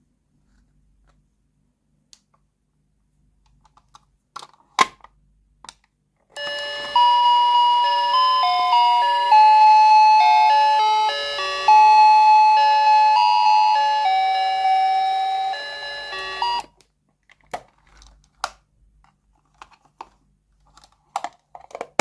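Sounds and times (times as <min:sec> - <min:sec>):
toy beeping melody: 0:06.4 - 0:16.7.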